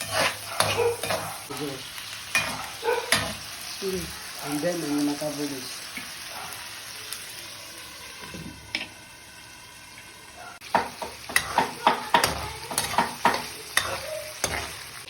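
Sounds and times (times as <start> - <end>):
utensil scraping pan: 0.0 - 1.5, 10.8 - 14.8
chicken sizzling in oil: 0.0 - 15.0.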